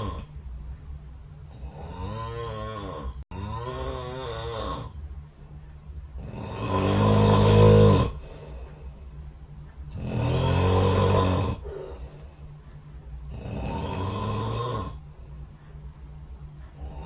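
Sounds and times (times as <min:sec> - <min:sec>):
person snoring: 0:00.0 - 0:00.3, 0:01.5 - 0:05.0, 0:06.2 - 0:08.8, 0:09.9 - 0:12.3, 0:13.3 - 0:15.0, 0:16.8 - 0:17.0.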